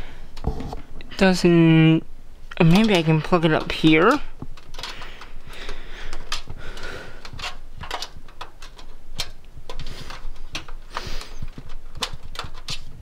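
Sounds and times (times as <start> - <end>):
cable plug clicking and scraping: 2.5 - 13.0.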